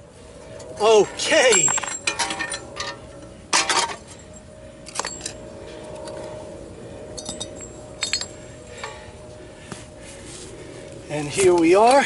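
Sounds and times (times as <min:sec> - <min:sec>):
faint steady hum: 0:00.0 - 0:12.0
metal parts clinking: 0:01.3 - 0:04.3, 0:04.9 - 0:05.4, 0:07.2 - 0:09.0.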